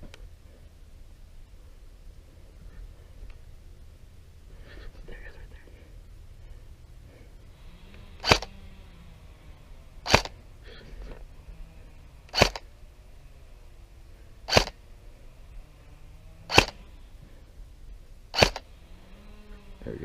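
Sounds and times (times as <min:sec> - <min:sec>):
airsoft gun shots: 0:08.2 - 0:08.6, 0:10.0 - 0:10.4, 0:12.3 - 0:12.7, 0:14.5 - 0:14.8, 0:16.5 - 0:16.9, 0:18.3 - 0:18.7.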